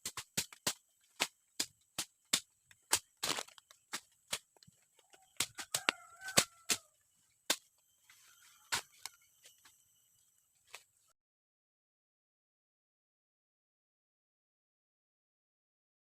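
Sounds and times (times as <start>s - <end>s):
sharp knocks and strikes: 0.0s - 4.6s, 7.5s - 7.8s.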